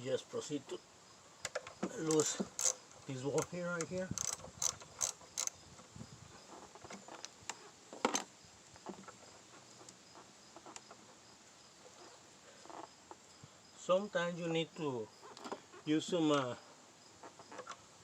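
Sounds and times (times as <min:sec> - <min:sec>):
ratchet clicking: 0:01.5 - 0:05.6.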